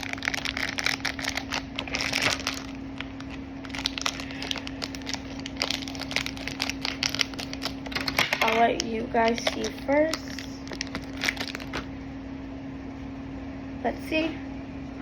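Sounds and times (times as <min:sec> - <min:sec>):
plastic packets crinkling: 0:00.0 - 0:11.9
faint steady hum: 0:00.0 - 0:15.0.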